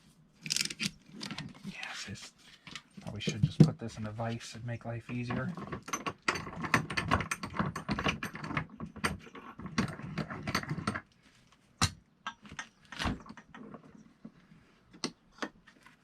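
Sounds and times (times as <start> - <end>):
metal clicks and knocks: 5.1 - 11.1.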